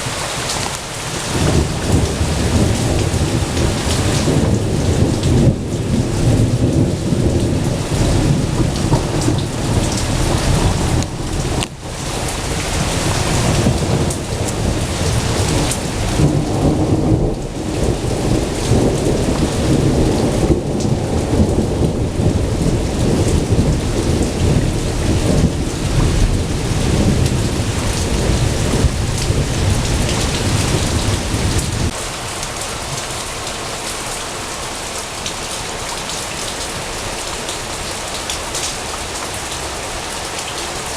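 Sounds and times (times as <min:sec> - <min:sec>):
heavy rain: 0:00.0 - 0:40.9
rolling thunder: 0:01.1 - 0:32.0.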